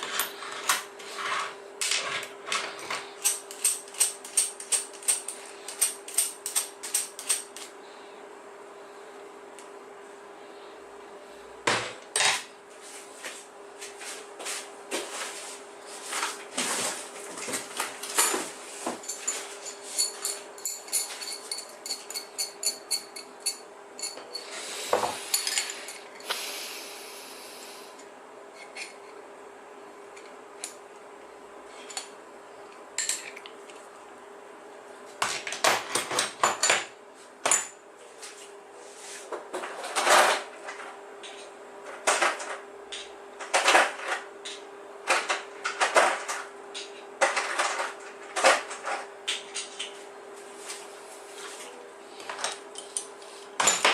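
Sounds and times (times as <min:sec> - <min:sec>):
metal tools clinking: 0:18.0 - 0:24.6, 0:25.3 - 0:26.2.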